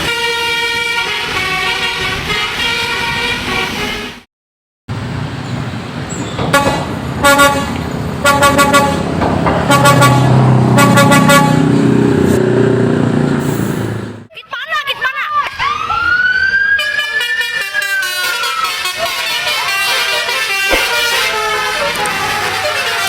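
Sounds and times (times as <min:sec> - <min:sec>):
bus engine rumble: 0:00.0 - 0:04.2, 0:04.9 - 0:14.3, 0:18.0 - 0:23.0
multi-tone bus horn tune: 0:00.0 - 0:04.3, 0:06.4 - 0:12.5, 0:16.8 - 0:23.0.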